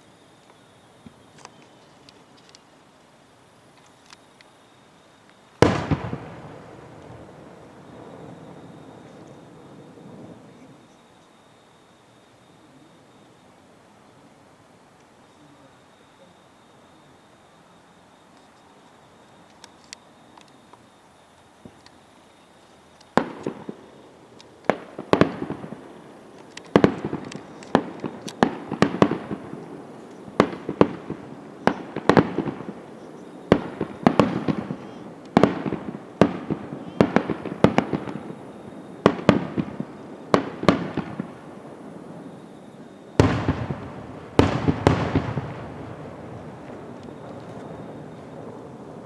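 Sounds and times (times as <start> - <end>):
fireworks bursting with echo: 5.2 - 11.2, 21.6 - 49.0.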